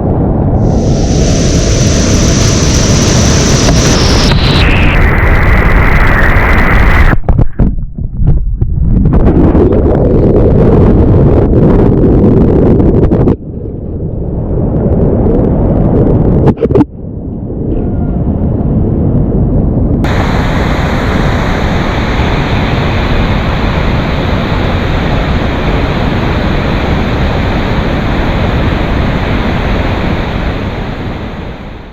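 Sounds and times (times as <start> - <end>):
wind buffeting microphone: 0.0 - 31.9
river whitewater roaring: 20.1 - 31.9.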